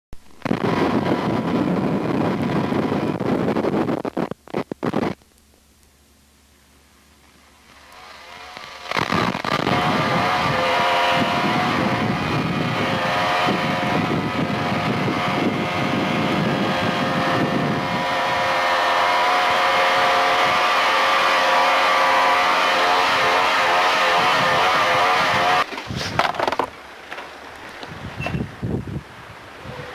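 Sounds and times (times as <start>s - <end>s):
engine running steadily: 0.1s - 28.6s.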